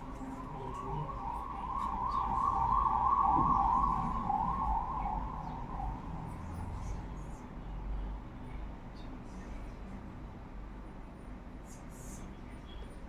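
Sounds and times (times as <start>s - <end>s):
siren warbling: 0.0s - 7.1s.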